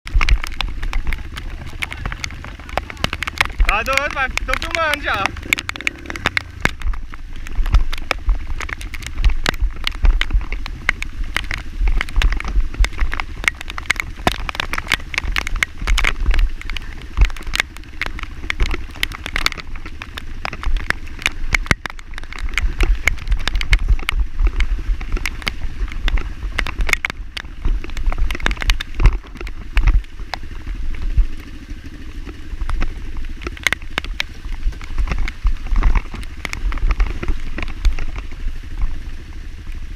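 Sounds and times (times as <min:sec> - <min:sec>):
motorcycle engine rumbling: 0:00.0 - 0:39.9
sharp clicks: 0:00.1 - 0:38.4.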